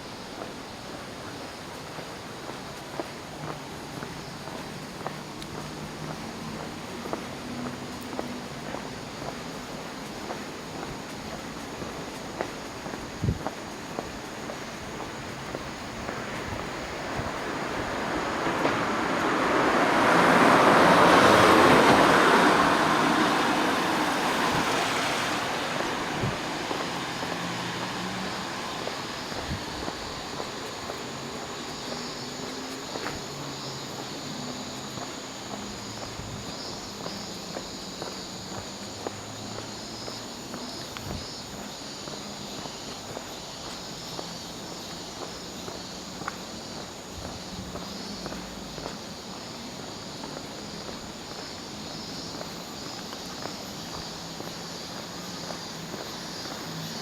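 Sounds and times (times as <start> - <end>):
insects chirping: 0.0 - 57.0
vehicle passing by: 15.4 - 36.5.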